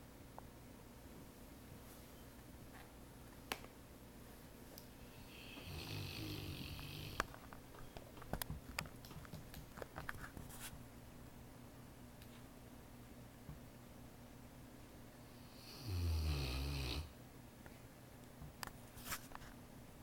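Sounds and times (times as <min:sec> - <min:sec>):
pet snoring: 0:05.2 - 0:07.3, 0:15.4 - 0:17.1.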